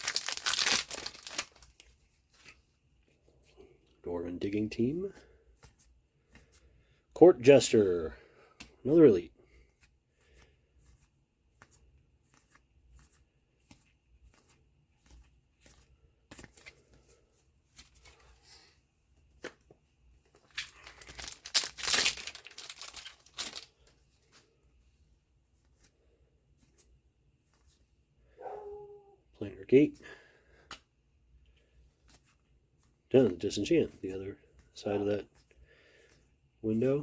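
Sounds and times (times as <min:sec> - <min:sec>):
wrapper crinkly tearing: 0:00.0 - 0:01.9, 0:20.5 - 0:23.9
cards being handled: 0:00.0 - 0:03.2, 0:05.1 - 0:06.9, 0:08.5 - 0:18.4, 0:19.2 - 0:24.6, 0:25.6 - 0:27.9, 0:30.6 - 0:37.0.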